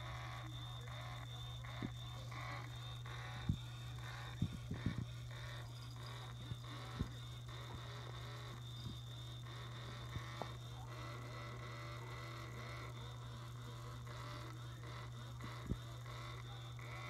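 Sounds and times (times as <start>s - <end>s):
faint high whine: 0.0s - 17.0s
low electrical hum: 0.0s - 17.0s.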